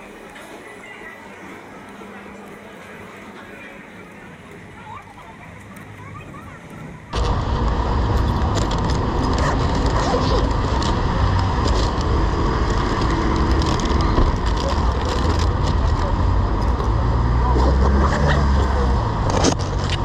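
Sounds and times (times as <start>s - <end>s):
road noise from passing cars: 3.3s - 20.0s
small clicks and rattles: 8.2s - 16.9s.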